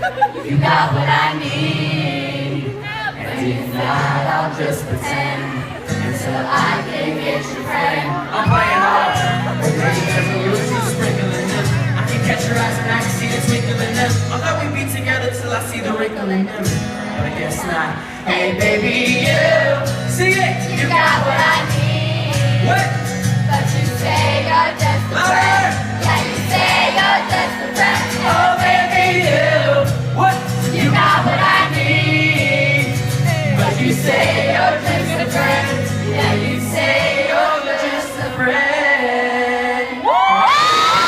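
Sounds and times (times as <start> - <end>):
bass line: 18.6 - 37.0.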